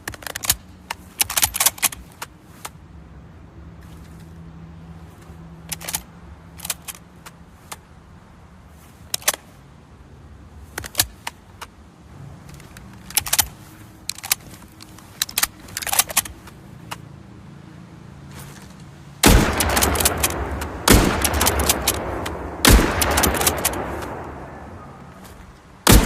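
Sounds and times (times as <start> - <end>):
rifle bolt metallic clicks: 0.0 - 2.8, 5.2 - 7.9, 9.1 - 9.5, 10.7 - 11.8, 12.4 - 17.1, 18.3 - 26.0.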